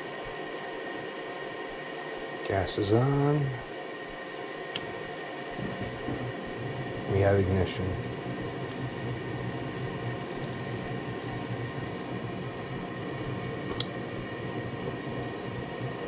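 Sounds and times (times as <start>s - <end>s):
gas furnace burners running: 0.1s - 16.0s.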